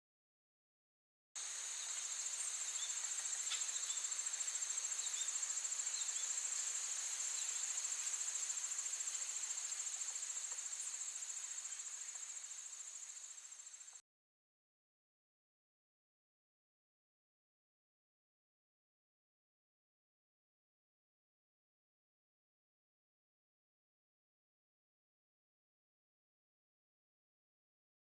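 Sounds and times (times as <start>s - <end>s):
cricket-like insect trill: 1.4s - 14.0s.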